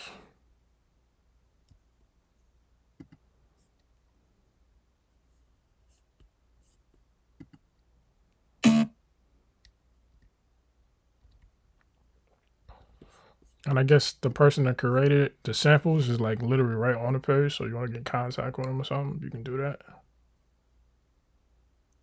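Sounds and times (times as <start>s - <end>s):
computer mouse clicks: 3.0s - 3.2s.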